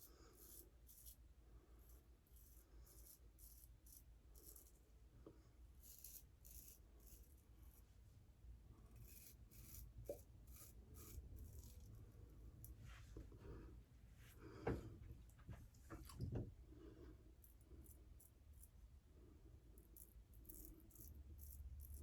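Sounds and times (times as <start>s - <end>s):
razor scraping stubble: 5.8s - 7.8s, 8.9s - 12.0s.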